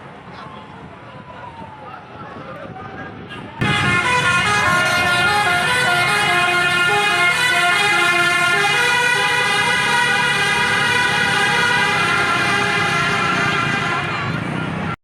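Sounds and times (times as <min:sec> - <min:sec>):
multi-tone bus air horn tune: 0:03.6 - 0:14.5.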